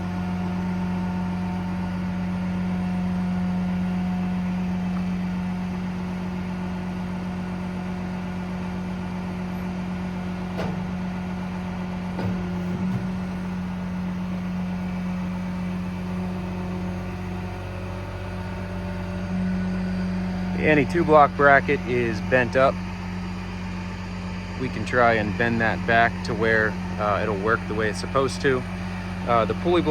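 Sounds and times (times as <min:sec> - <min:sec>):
diesel truck engine drone: 0:00.0 - 0:29.9
crane hydraulics clunks: 0:09.4 - 0:29.9.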